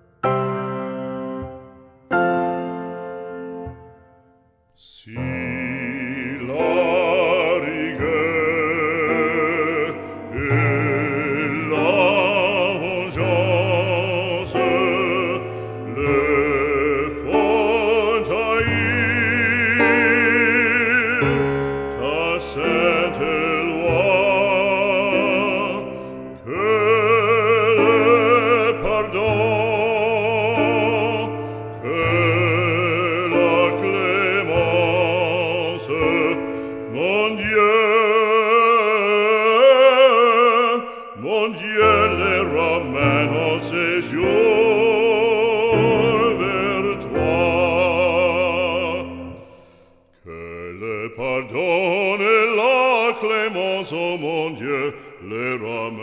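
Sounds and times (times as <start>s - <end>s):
operatic solo voice singing: 4.7s - 56.0s
sustained accompaniment: 5.1s - 49.4s.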